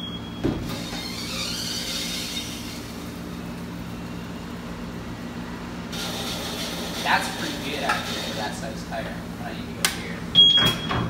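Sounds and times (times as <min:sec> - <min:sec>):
wheel balancer spinning tire: 0:00.0 - 0:09.2.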